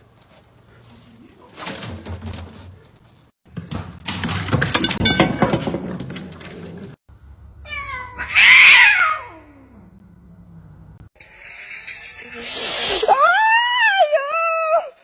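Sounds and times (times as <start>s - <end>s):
rustling and clatter: 0.1s - 7.0s
cat meowing: 7.6s - 9.8s.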